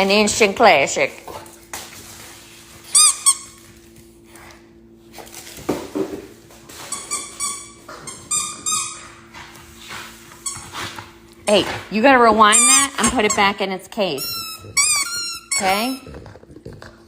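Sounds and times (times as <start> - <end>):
squeaky dog toy squeaking: 12.5 - 13.5, 14.2 - 16.0.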